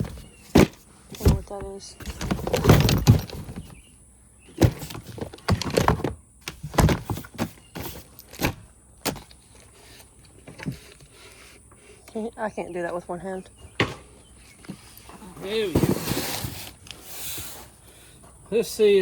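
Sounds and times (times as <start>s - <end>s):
items knocking in cardboard box: 0.0s - 3.8s, 4.5s - 9.3s, 15.4s - 16.6s
rustling: 0.0s - 3.9s, 4.5s - 12.1s, 14.1s - 18.4s.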